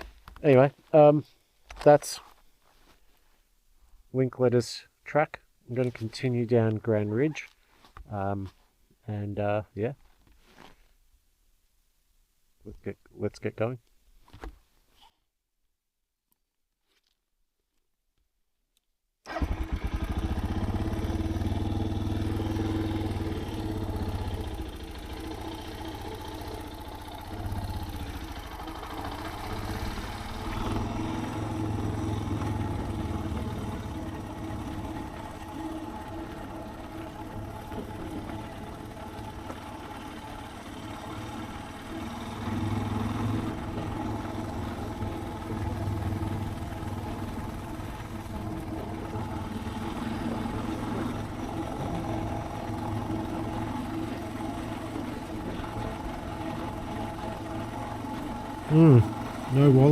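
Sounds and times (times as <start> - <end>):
motorcycle engine running: 19.3 - 59.9.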